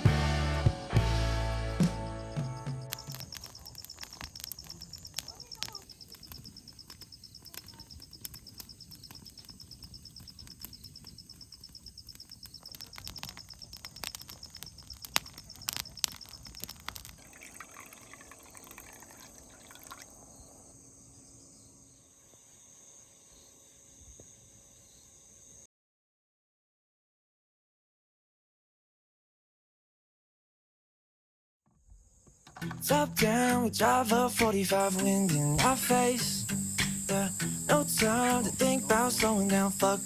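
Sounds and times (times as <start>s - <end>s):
insect trilling: 2.3s - 25.6s, 32.2s - 40.0s
sharp clicks and crackles: 2.8s - 17.9s
faint steady hum and hiss: 32.5s - 40.0s.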